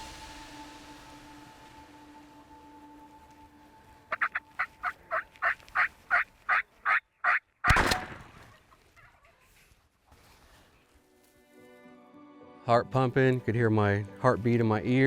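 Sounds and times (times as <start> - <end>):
turkey yelping: 4.1 - 8.0
shotgun blast: 7.7 - 8.5.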